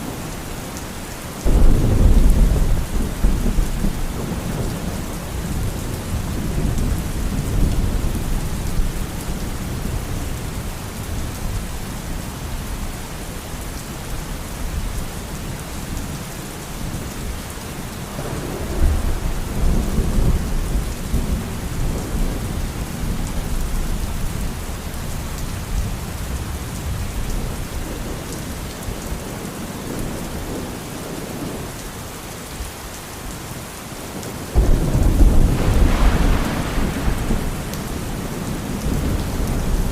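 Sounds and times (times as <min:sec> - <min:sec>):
steady rain: 0:00.0 - 0:39.9
rolling thunder: 0:01.4 - 0:09.2, 0:18.2 - 0:24.3, 0:34.6 - 0:39.9.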